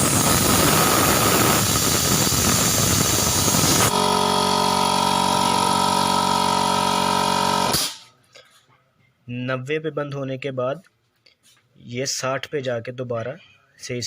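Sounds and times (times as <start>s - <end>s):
compressor pump motor humming: 0.0s - 8.0s
air compressor hissing: 0.0s - 8.1s.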